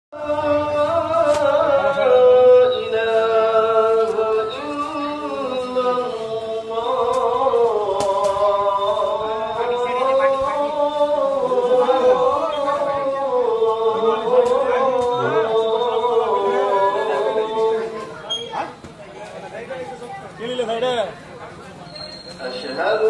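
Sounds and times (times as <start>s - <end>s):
man chanting call to prayer: 0.2s - 18.2s.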